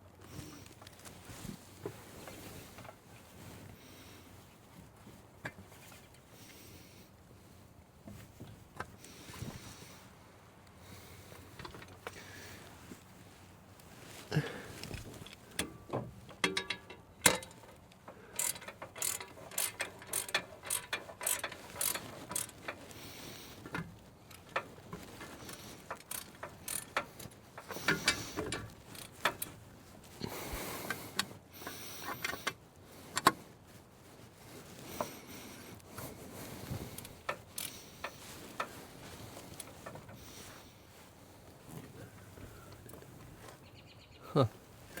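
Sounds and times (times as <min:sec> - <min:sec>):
metal tools clinking: 0:16.4 - 0:17.7, 0:18.4 - 0:22.8
ratchet wrench clicking: 0:18.3 - 0:22.6, 0:25.8 - 0:29.5, 0:37.6 - 0:38.2.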